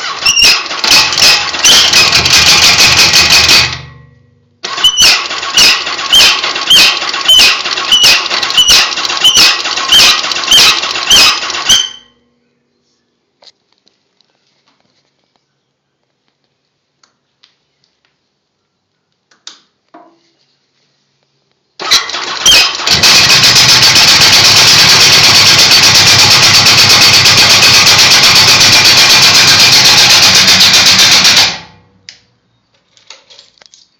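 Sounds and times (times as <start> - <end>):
electric starter cranking: 0.0 - 4.0, 4.6 - 12.0, 21.8 - 31.9
motorcycle engine running: 0.8 - 3.8, 22.5 - 31.8.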